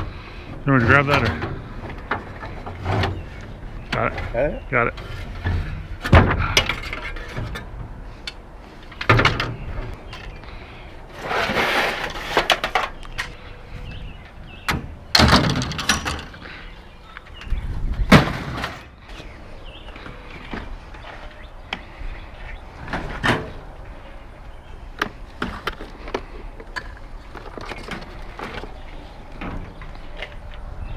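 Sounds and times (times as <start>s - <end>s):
metal scraping drag: 11.1s - 12.7s
scrap metal clanking: 11.1s - 13.4s.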